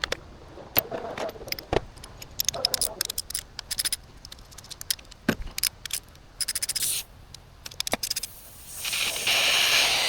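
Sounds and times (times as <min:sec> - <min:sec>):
tools and metal parts clinking: 0:00.0 - 0:07.0.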